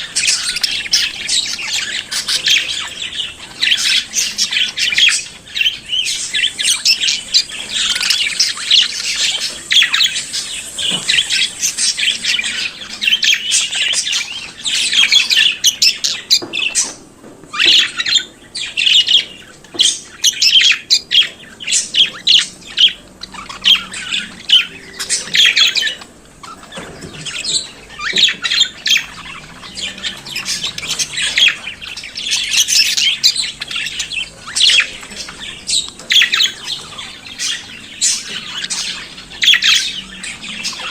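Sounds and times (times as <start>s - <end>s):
budgerigars warbling and chattering: 0.0s - 40.9s.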